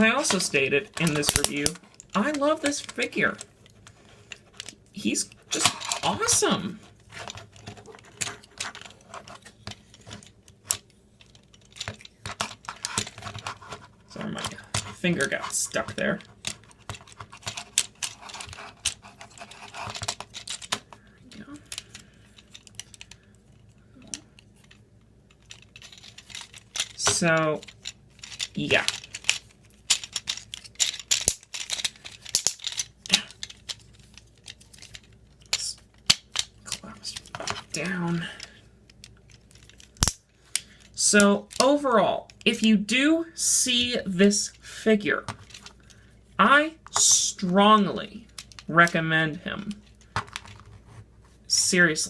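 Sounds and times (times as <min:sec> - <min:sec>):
plastic toy parts clicking: 0:00.0 - 0:42.6, 0:48.2 - 0:49.0
plastic toy clicking: 0:00.3 - 0:03.0, 0:25.4 - 0:36.9.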